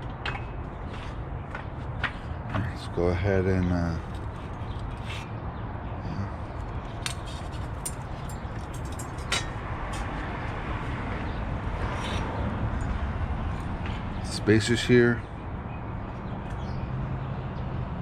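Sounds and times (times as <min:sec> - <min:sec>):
light clicks of bike parts: 0:06.6 - 0:10.6.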